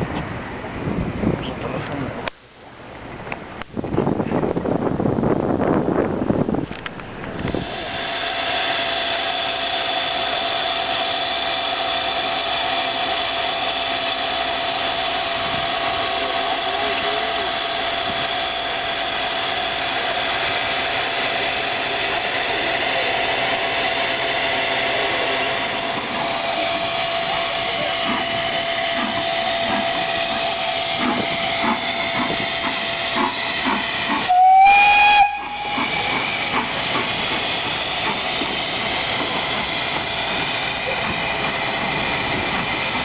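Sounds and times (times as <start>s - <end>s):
steam locomotive hissing: 7.2s - 43.0s
steam whistle blast: 34.2s - 36.1s.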